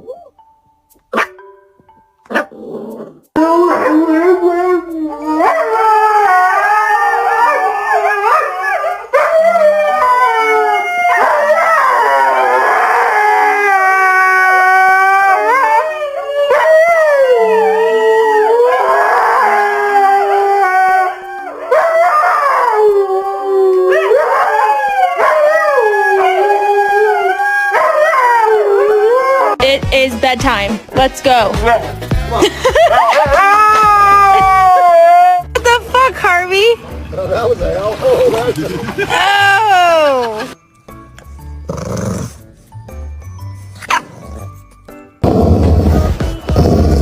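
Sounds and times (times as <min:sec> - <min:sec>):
dog howling: 0:03.4 - 0:29.6, 0:32.8 - 0:35.5.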